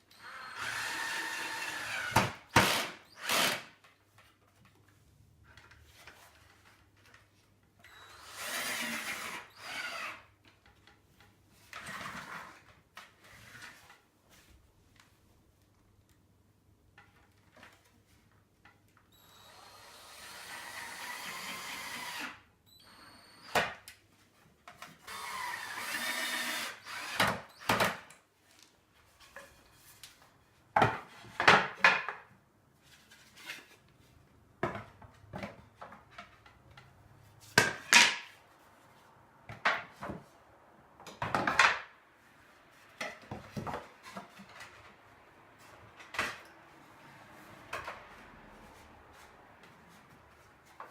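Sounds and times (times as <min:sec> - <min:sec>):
power drill whining into wood: 0:00.1 - 0:03.7, 0:07.9 - 0:10.3, 0:19.1 - 0:23.7, 0:25.0 - 0:27.9.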